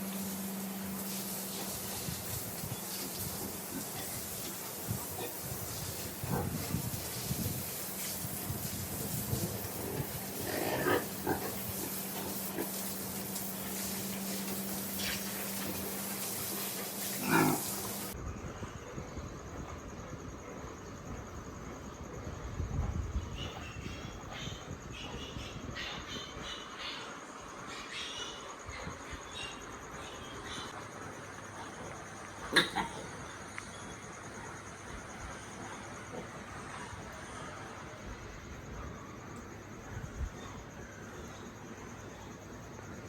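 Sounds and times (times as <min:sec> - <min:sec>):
high pulsing insect trill: 0:00.0 - 0:43.0
steady hiss: 0:00.0 - 0:43.0
pigs grunting and squealing: 0:09.6 - 0:13.0, 0:17.1 - 0:18.2, 0:32.4 - 0:33.2.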